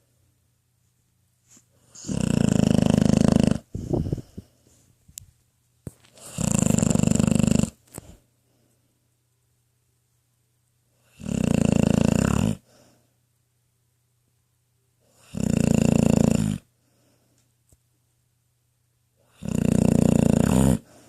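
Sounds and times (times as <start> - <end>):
quiet breathing: 1.4 - 5.2, 5.9 - 9.2, 12.5 - 13.3, 16.6 - 17.6, 20.7 - 21.0
dog snoring: 1.8 - 4.4, 6.1 - 7.8, 11.0 - 12.9, 15.0 - 16.7, 19.2 - 21.0.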